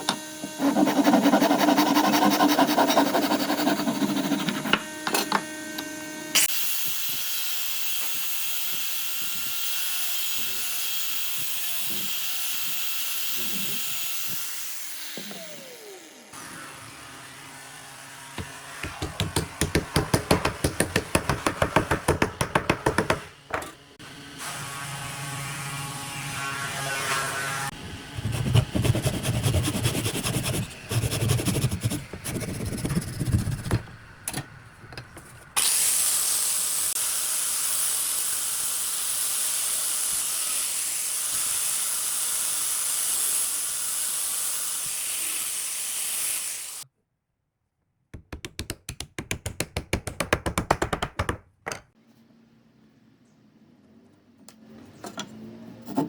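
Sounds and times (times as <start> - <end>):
buzzing power tool: 0.0 - 2.2, 2.8 - 18.9, 24.0 - 28.2
rapid rubbing strokes: 0.6 - 4.7, 28.2 - 33.7.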